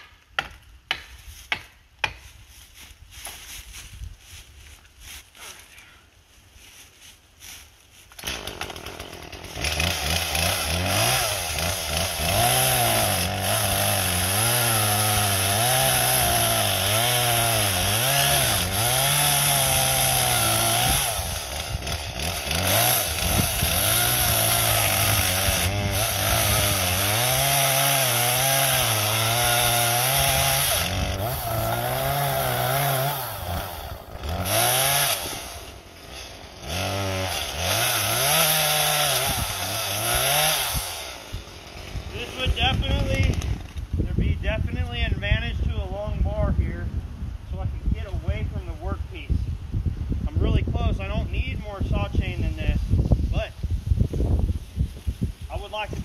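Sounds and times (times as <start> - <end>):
chainsaw cutting: 7.4 - 43.9.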